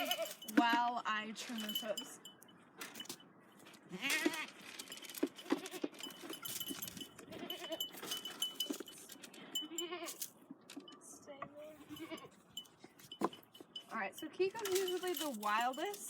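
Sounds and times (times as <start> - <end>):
goat bleating: 0.0 - 0.5, 3.8 - 4.6, 7.2 - 8.6, 9.4 - 10.3, 11.7 - 12.5.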